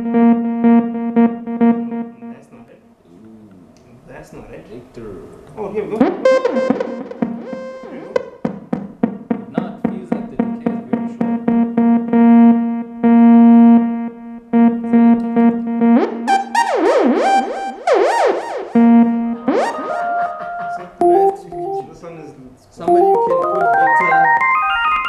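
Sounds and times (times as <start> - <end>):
synthesizer pitch sweeps: 0.0 - 2.4, 6.0 - 8.2, 11.0 - 21.7
synthesizer short repeated notes: 0.0 - 2.6, 6.0 - 8.4, 10.3 - 21.9, 22.9 - 25.0.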